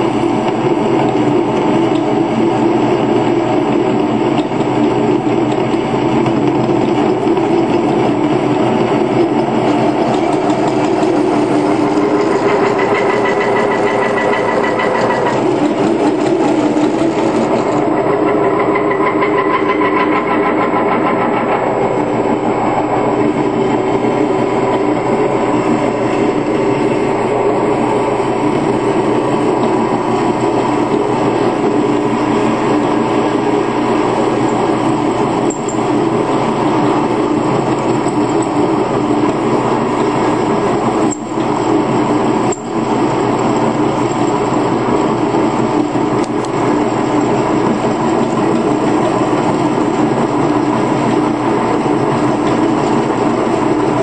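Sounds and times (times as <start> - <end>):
lathe running with fine rattle: 0.0 - 54.0.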